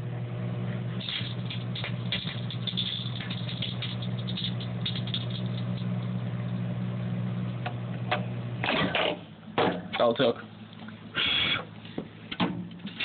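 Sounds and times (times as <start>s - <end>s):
microwave oven humming: 0.0s - 13.0s
electrical arcing crackles: 1.0s - 6.7s.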